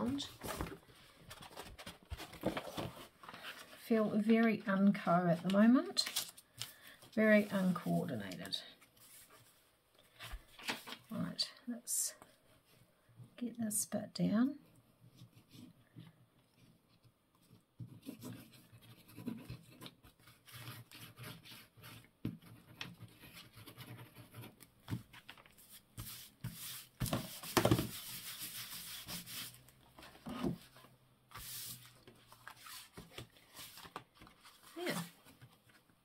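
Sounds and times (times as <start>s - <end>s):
paper rustling and scuffing: 0.0s - 3.8s, 5.3s - 9.6s, 10.2s - 11.1s, 24.8s - 35.9s
hands rubbing paper: 25.6s - 29.6s, 31.3s - 34.0s.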